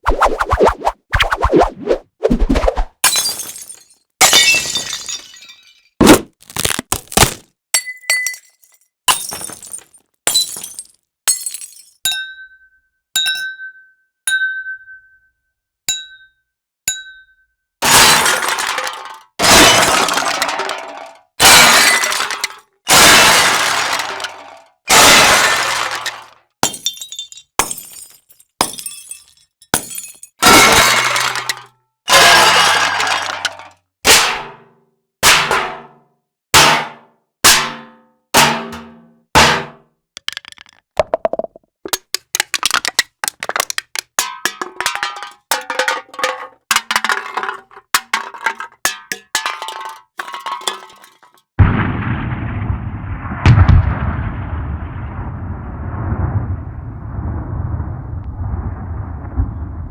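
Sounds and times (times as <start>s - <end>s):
glass breaking: 3.0s - 12.0s, 17.8s - 33.7s, 41.9s - 51.5s.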